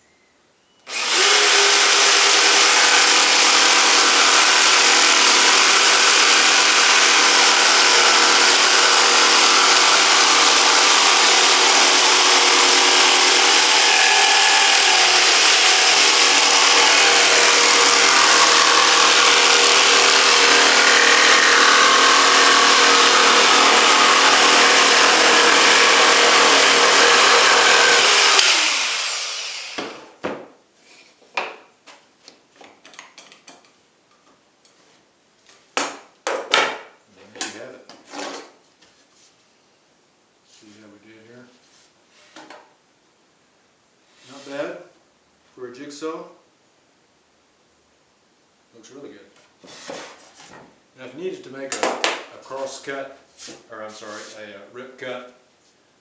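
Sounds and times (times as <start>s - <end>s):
electric jigsaw cutting: 0.9s - 30.1s.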